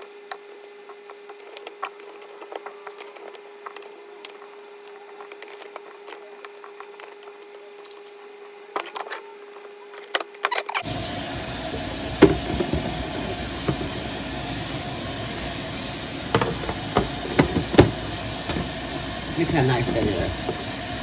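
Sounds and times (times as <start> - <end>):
loud steady hiss: 10.8 - 21.0
knocks: 11.7 - 14.2, 16.3 - 20.8
handling clicks and taps: 11.7 - 14.3, 16.2 - 20.9.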